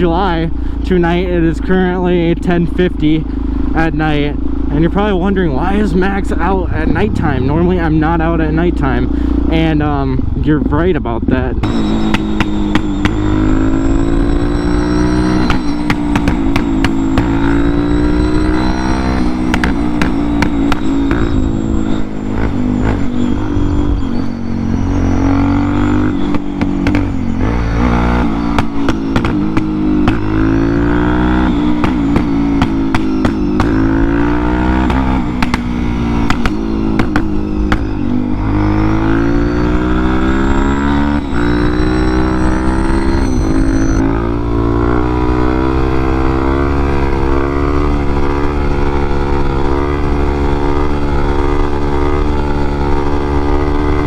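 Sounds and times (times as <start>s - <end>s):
motorcycle engine accelerating: 0.0s - 54.0s
short sharp pops: 11.7s - 13.2s, 15.3s - 17.5s, 28.5s - 30.3s, 31.7s - 33.9s, 34.8s - 37.9s.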